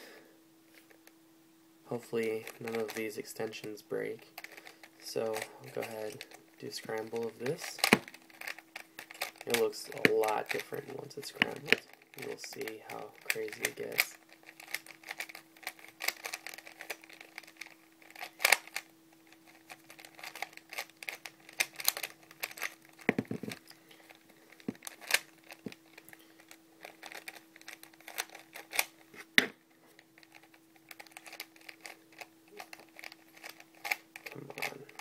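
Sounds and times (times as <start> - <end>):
faint steady hum: 0.0 - 35.0
plastic puzzle cube clicking: 7.0 - 18.9, 19.5 - 23.7, 24.6 - 29.0, 30.2 - 34.8.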